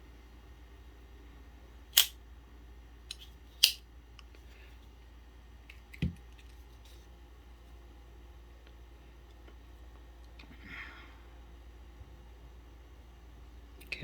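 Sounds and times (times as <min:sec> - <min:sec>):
folding knife clicks: 0:02.0 - 0:02.2, 0:03.1 - 0:03.8.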